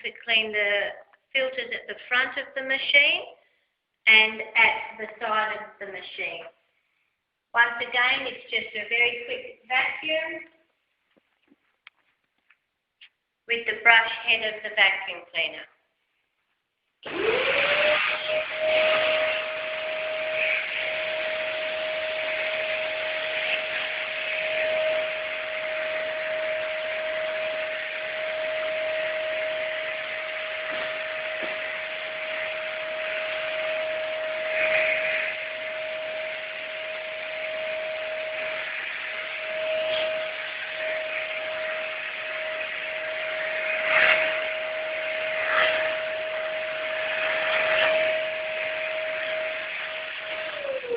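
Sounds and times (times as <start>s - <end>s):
vacuum cleaner running: 17.0s - 50.9s.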